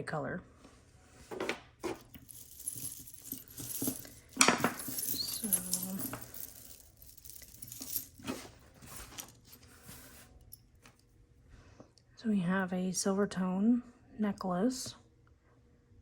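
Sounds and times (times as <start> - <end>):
rustling: 1.8 - 10.3
jewelry clinking: 1.8 - 10.4.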